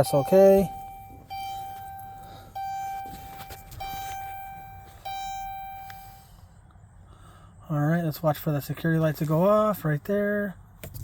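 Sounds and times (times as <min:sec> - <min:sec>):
electronic chime dinging: 0:00.0 - 0:06.2.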